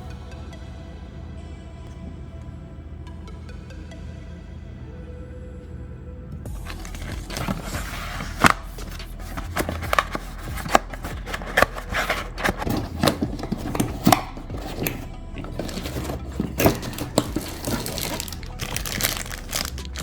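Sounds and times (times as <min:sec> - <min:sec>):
steady low hum: 0:00.0 - 0:19.5
cardboard box handling: 0:06.5 - 0:20.0.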